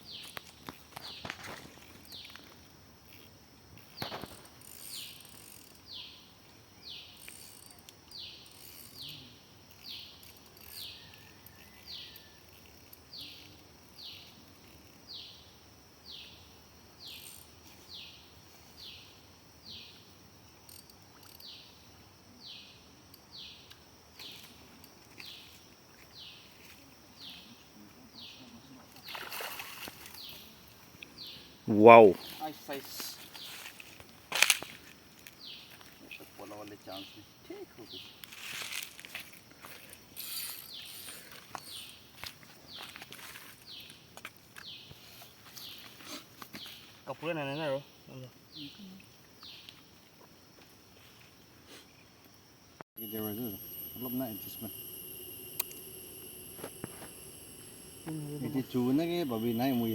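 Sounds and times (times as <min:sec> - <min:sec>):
faint high insect hiss: 0:00.0 - 0:59.9
sharp click: 0:55.5 - 0:55.8.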